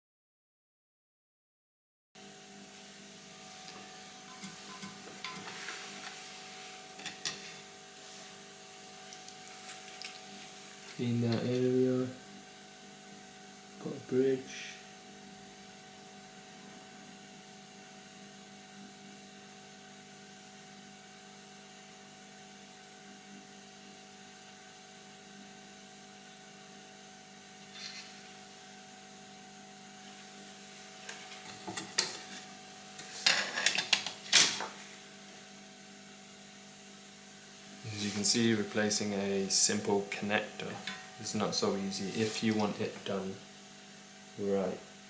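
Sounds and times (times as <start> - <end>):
electrical equipment hum and whine: 2.2 - 45.0.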